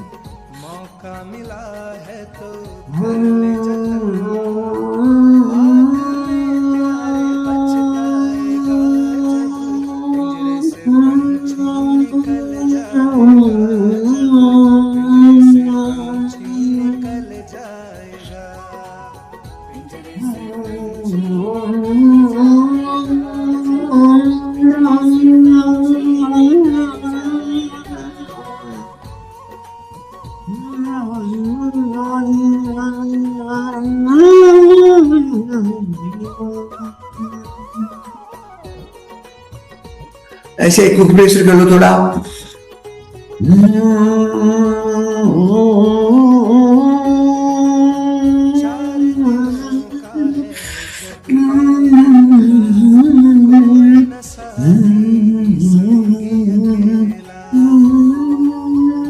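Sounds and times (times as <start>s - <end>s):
person singing devotional song: 0.0s - 39.4s, 40.6s - 59.0s
musical accompaniment: 0.0s - 59.0s
person singing a held note: 2.9s - 17.1s, 20.2s - 29.0s.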